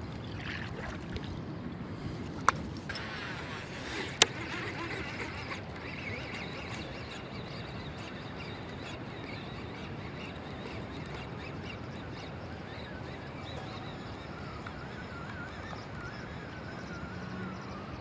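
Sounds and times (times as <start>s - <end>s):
faint bird calls: 3.8s - 18.0s.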